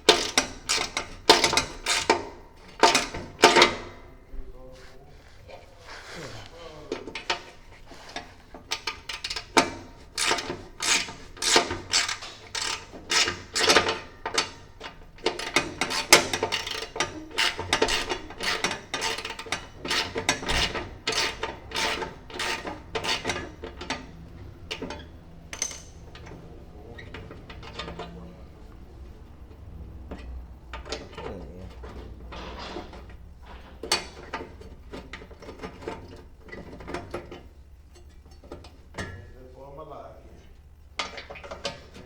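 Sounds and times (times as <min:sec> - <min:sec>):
ratchet wrench clicking: 0:00.1 - 0:03.9, 0:08.6 - 0:28.2.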